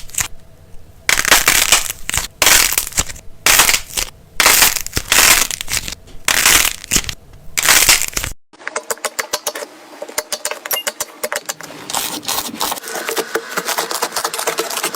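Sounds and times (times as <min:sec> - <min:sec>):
slime crackling when squeezed: 0:01.1 - 0:08.4.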